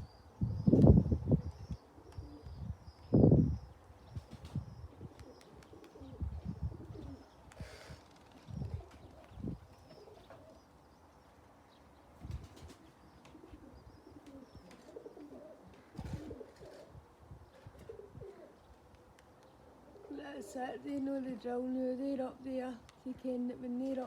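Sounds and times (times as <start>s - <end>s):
pigeons cooing: 0.7s - 10.8s, 12.2s - 18.8s, 19.5s - 20.8s.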